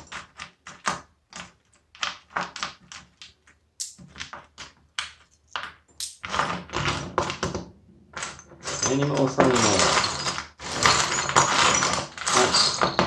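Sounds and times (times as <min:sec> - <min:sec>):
coins clinking on a table: 0:03.8 - 0:07.6, 0:08.2 - 0:13.0.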